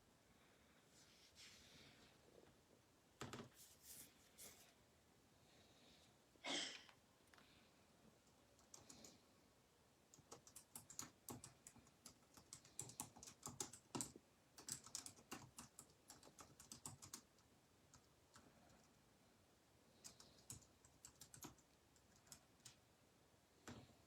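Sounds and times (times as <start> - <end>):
typing on computer keyboard: 8.2 - 9.2, 10.1 - 19.0, 20.0 - 22.8.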